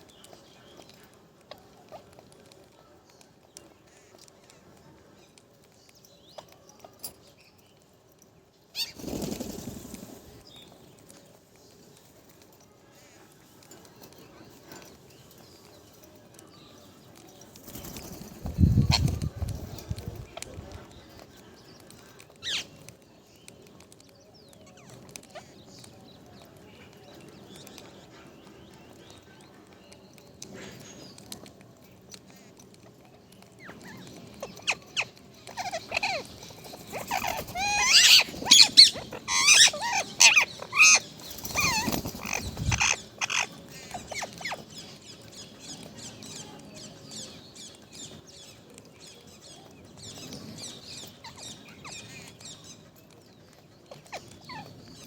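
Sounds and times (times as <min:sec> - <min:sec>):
parrot calling: 0:34.7 - 0:43.5.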